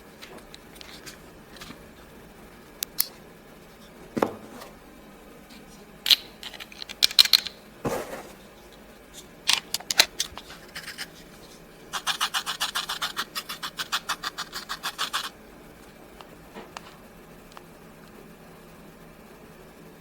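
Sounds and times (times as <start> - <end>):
sharp handling clicks and scratches: 8.6 - 15.3.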